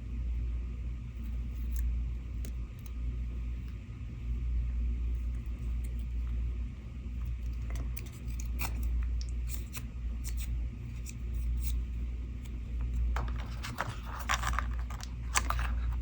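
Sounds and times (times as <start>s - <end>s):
low steady hum: 0.0s - 16.0s
scissors snipping cardstock: 12.5s - 16.0s.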